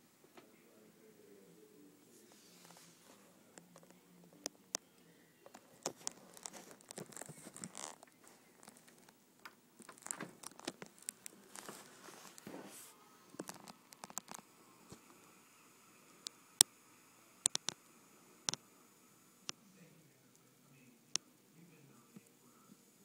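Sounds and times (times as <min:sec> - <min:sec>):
rustling: 0:05.5 - 0:15.2
small sharp clicks: 0:17.4 - 0:17.8.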